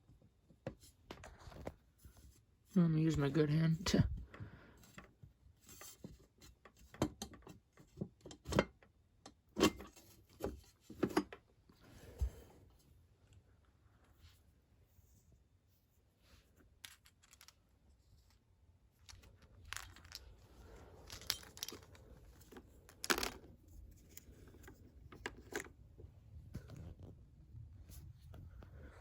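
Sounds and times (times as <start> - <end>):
handling clicks rustles and knocks: 19.0 - 25.8.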